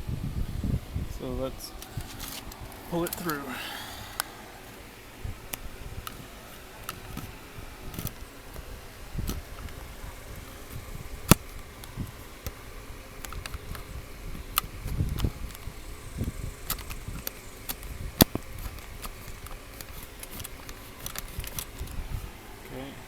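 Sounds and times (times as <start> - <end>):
wiring harness rubbing and clicking: 1.2 - 22.8
sharp clicks: 13.2 - 22.0.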